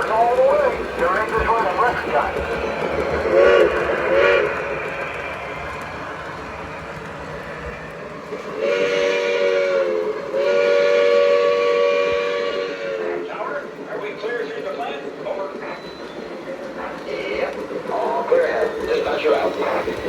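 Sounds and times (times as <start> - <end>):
running train rumble: 0.0 - 20.0
multi-tone train horn: 3.3 - 4.8, 8.5 - 13.3.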